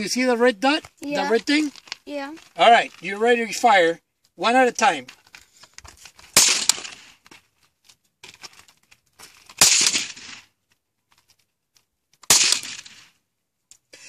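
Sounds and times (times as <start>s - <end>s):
suppressed gunshots: 6.4s - 7.1s, 9.6s - 10.5s, 12.3s - 13.1s.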